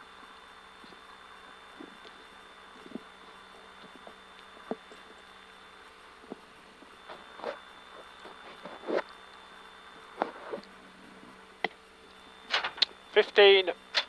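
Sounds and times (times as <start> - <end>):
faint hum: 0.0 - 14.0
low hiss: 0.0 - 14.0.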